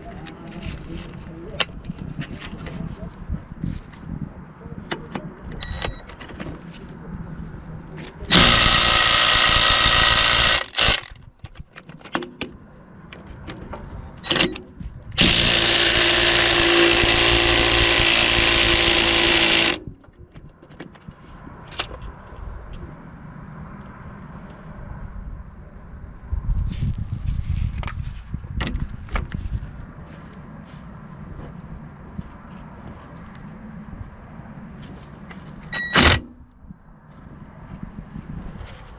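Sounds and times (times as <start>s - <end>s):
cordless impact wrench running: 8.3s - 11.2s, 14.3s - 14.5s, 15.2s - 19.9s.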